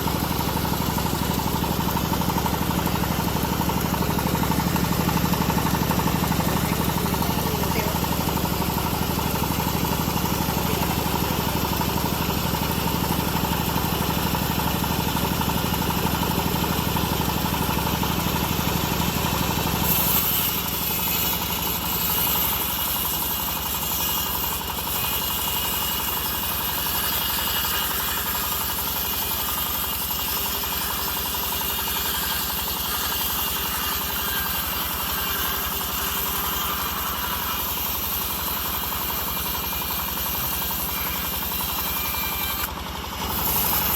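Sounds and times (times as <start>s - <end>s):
engine drone: 0.0s - 43.9s
bandsaw mill hiss: 19.6s - 43.9s.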